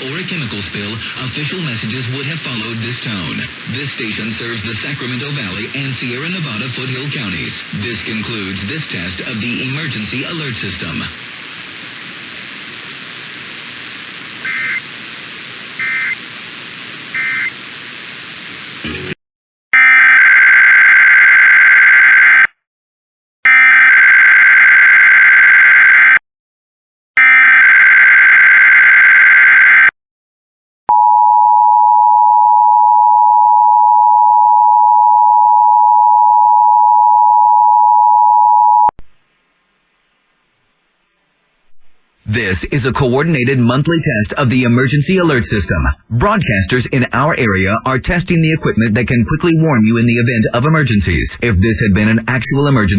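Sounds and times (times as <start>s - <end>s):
radio hiss: 0.0s - 19.2s, 41.6s - 52.9s.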